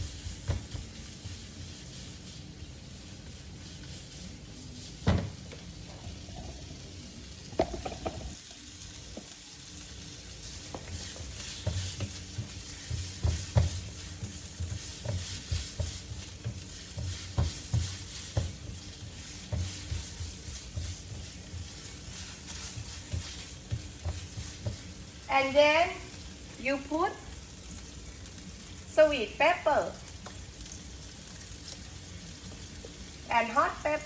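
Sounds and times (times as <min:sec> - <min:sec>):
meat sizzling in oil: 0:00.0 - 0:34.0
utensil scraping a pan: 0:05.9 - 0:08.4, 0:10.5 - 0:25.2.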